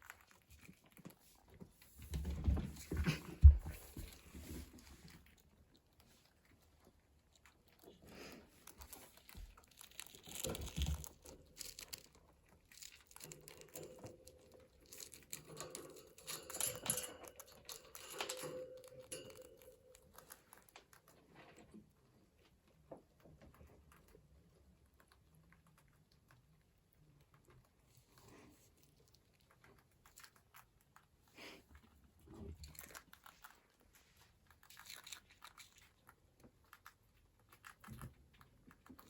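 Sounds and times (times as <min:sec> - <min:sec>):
snack packaging crinkling: 0:07.2 - 0:13.8, 0:32.6 - 0:39.0.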